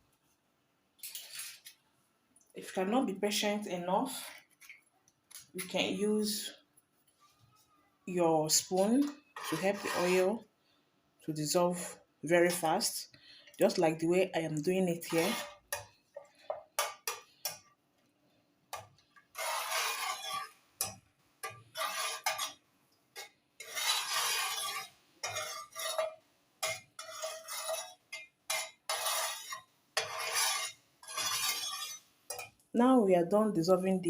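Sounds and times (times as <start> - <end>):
spoon stirring and scraping a pot: 8.5 - 10.5, 11.7 - 17.8, 18.7 - 32.6.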